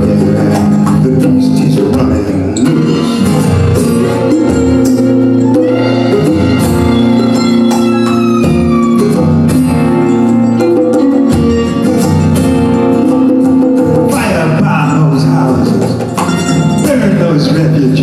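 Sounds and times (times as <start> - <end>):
acoustic guitars strumming: 0.0 - 18.0
hand percussion: 0.0 - 18.0
mandolin strumming: 0.0 - 18.0.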